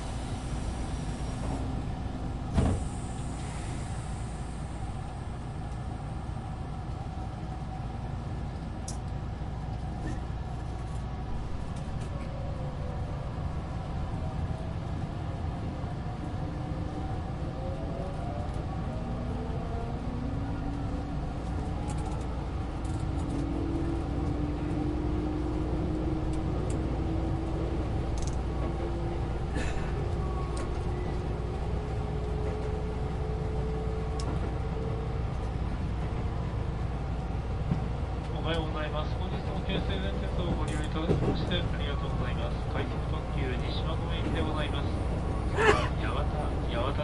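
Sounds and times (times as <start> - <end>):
train wheels rumbling: 0.0 - 47.0.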